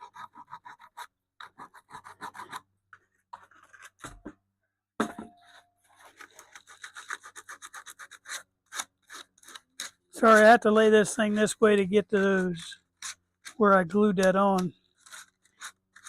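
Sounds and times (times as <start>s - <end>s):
knocks: 5.0s - 5.4s.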